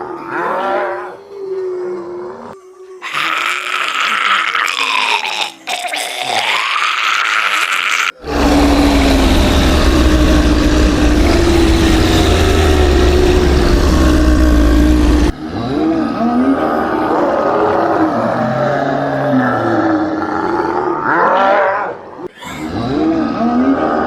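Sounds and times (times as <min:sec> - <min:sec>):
growling groans: 0:00.0 - 0:24.0
dense rumble with low drone: 0:08.2 - 0:15.4.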